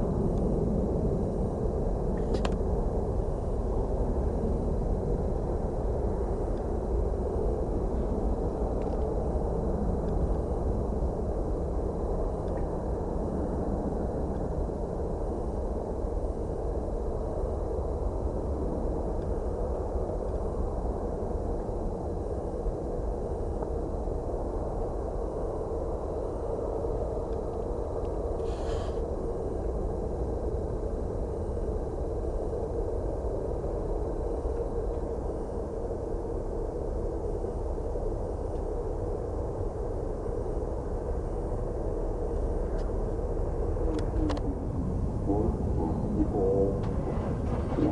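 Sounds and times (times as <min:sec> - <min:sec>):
jet engine rumble: 0:00.0 - 0:47.9
faint high ticks: 0:12.4 - 0:12.7
brief hiss: 0:28.4 - 0:29.0.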